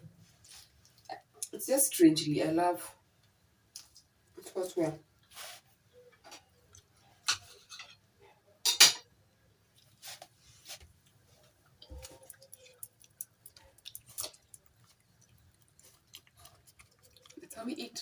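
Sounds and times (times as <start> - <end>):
dishes and cutlery clicking: 8.6 - 9.1
dishes clattering: 8.6 - 9.1.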